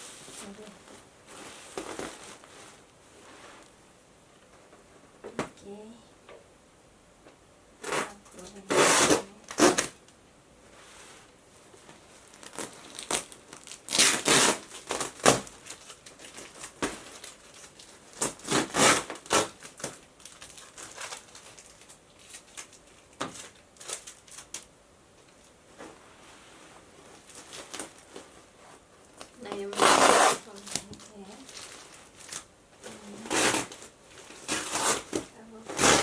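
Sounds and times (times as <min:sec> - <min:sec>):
packaging crinkling: 0:12.2 - 0:25.6, 0:27.2 - 0:28.3, 0:29.0 - 0:36.0.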